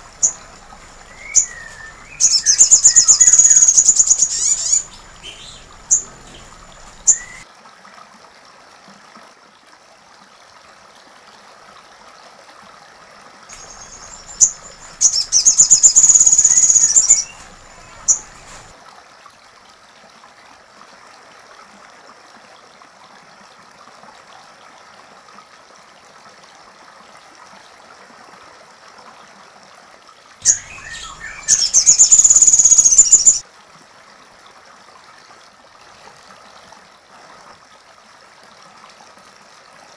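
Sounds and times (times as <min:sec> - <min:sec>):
bird rattling calls: 0:00.0 - 0:07.4, 0:13.5 - 0:18.7, 0:30.4 - 0:33.4
short sharp bird notes: 0:00.0 - 0:07.4.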